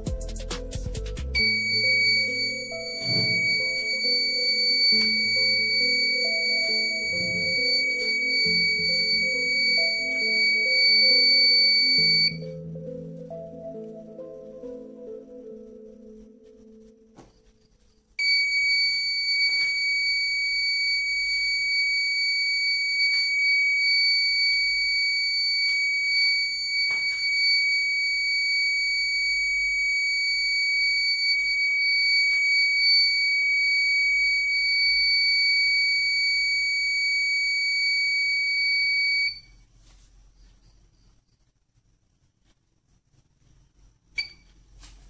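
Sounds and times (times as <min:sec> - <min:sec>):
high-pitched alarm buzzer: 0:01.4 - 0:12.4, 0:18.2 - 0:39.4.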